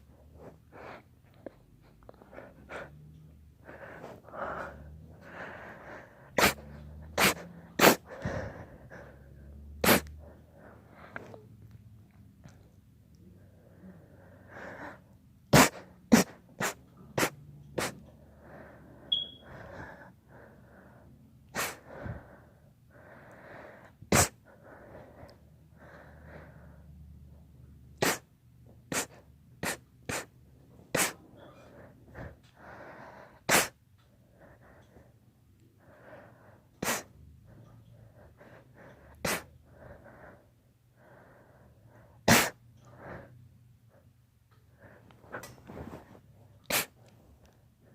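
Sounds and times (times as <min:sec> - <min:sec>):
faint breathing: 0:00.0 - 0:11.6, 0:13.2 - 0:15.2, 0:16.8 - 0:27.6, 0:28.9 - 0:47.9
short sharp sneezes: 0:06.4 - 0:06.6, 0:07.2 - 0:08.0, 0:09.8 - 0:10.2, 0:15.6 - 0:18.0, 0:24.1 - 0:24.4, 0:28.0 - 0:28.3, 0:28.9 - 0:30.3, 0:31.0 - 0:31.6, 0:33.5 - 0:33.8, 0:36.8 - 0:37.1, 0:39.3 - 0:39.5, 0:42.3 - 0:42.6, 0:46.7 - 0:47.0.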